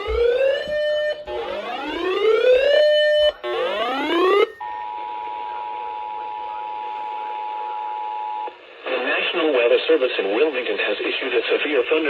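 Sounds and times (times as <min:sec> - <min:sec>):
electronic alarm siren whooping: 0:00.0 - 0:08.5.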